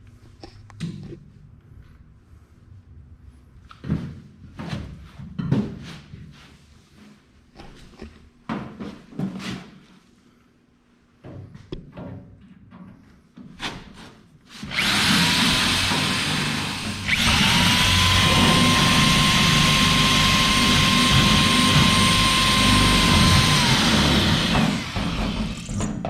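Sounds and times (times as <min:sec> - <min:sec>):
power tool whining: 0:14.6 - 0:25.9.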